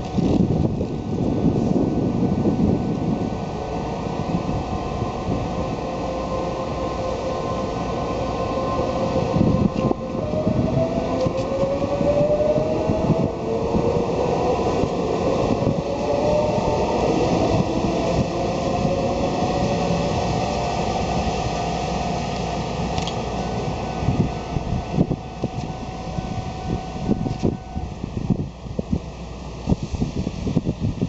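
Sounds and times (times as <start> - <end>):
electric train rumbling past: 0.0 - 31.0
train motor whine: 0.0 - 31.0.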